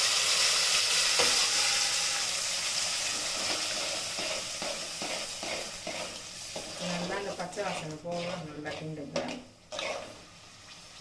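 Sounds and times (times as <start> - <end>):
paste sizzling in hot oil: 0.0 - 11.0
stirring scrapes: 3.2 - 10.3.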